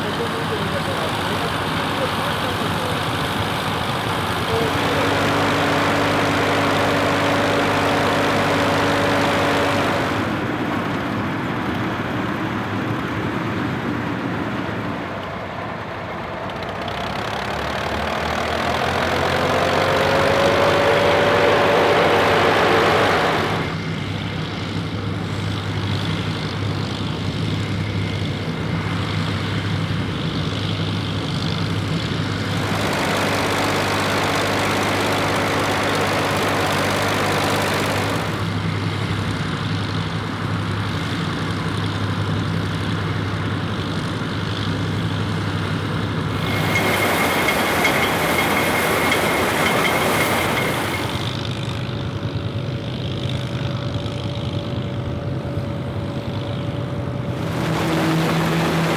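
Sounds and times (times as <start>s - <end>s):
combine machinery clattering: 0.0s - 11.1s, 32.1s - 38.7s, 46.3s - 51.9s, 57.2s - 58.9s
tractor engine running: 0.0s - 58.9s.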